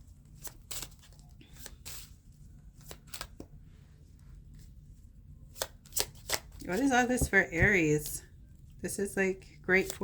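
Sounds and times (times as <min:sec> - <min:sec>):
cards being shuffled by hand: 0:00.3 - 0:03.6.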